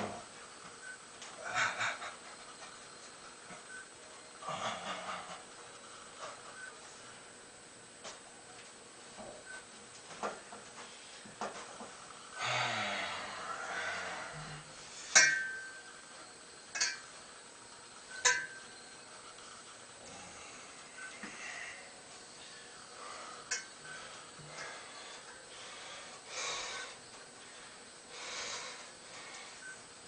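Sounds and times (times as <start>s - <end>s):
rustling and shuffling: 5.4s - 12.4s, 17.0s - 28.1s
dumbbells clanking: 13.7s - 15.9s, 16.7s - 17.1s, 18.1s - 18.7s, 23.3s - 25.4s.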